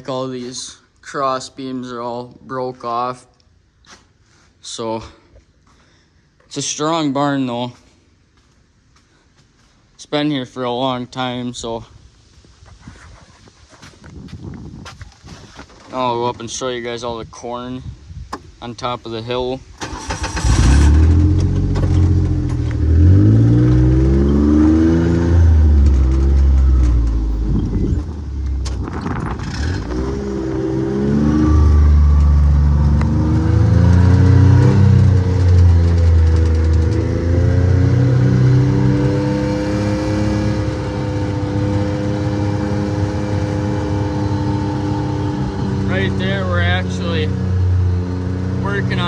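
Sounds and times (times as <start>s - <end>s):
vehicle engine accelerating: 20.0s - 49.0s.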